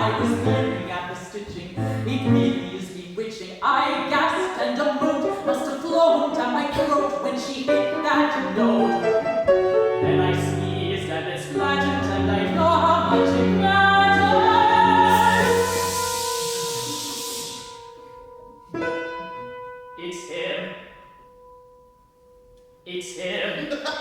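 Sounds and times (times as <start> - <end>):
piano accompaniment: 0.0 - 2.9, 4.0 - 22.8
operatic singing: 10.0 - 17.9
steady hiss: 14.8 - 19.6.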